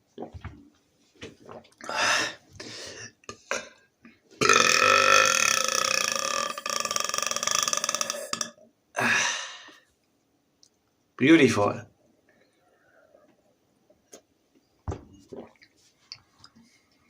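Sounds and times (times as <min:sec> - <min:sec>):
man burping: 0:03.2 - 0:03.8, 0:04.4 - 0:09.6.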